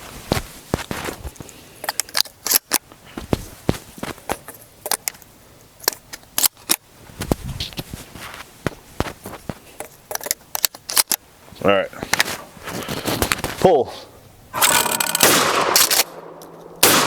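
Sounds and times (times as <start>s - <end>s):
shotgun metallic clicks: 14.6s - 17.0s.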